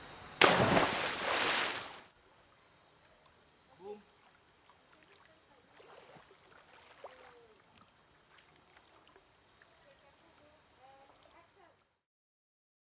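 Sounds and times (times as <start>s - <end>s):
high-pitched insect chorus: 0.0s - 12.0s
faint trickle of water: 3.1s - 11.8s.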